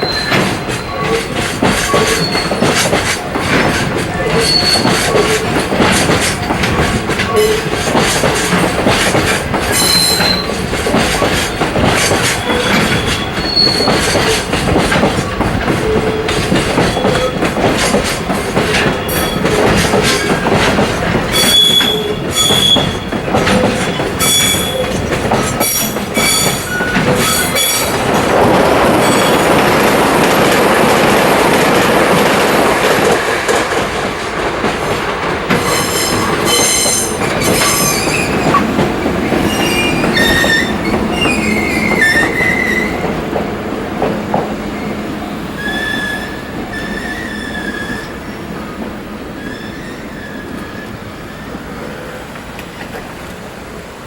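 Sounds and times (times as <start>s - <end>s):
train wheels squealing: 0.0s - 2.8s, 4.2s - 5.5s, 9.7s - 10.6s, 11.2s - 14.5s, 15.8s - 17.5s, 18.7s - 20.5s, 21.3s - 28.0s, 35.7s - 38.6s, 39.4s - 43.1s, 45.6s - 48.4s, 49.4s - 51.6s
rumbling wagon clatter: 0.1s - 44.5s.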